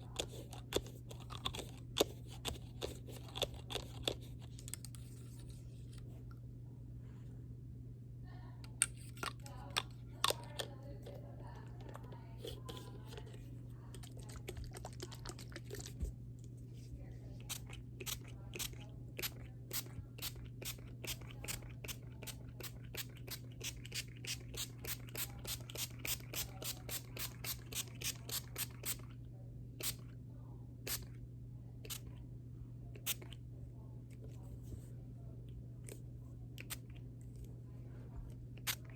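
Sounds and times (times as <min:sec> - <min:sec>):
steady low hum: 0:00.0 - 0:38.9.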